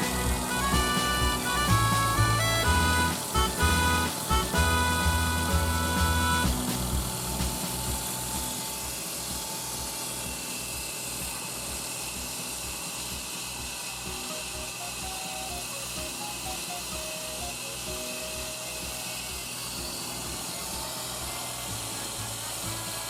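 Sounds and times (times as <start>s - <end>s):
high whine: 0.0s - 23.0s.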